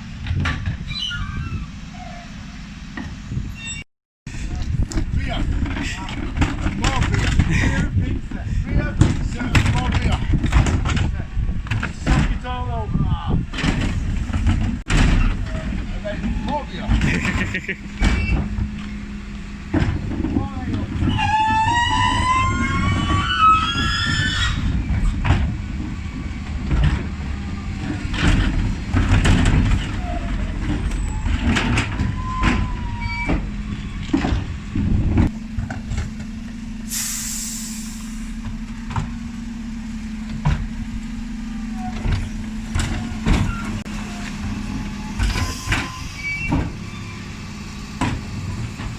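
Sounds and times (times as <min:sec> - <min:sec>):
truck engine running: 0:00.0 - 0:03.6, 0:04.3 - 0:48.9
air brake hiss: 0:36.9 - 0:38.3.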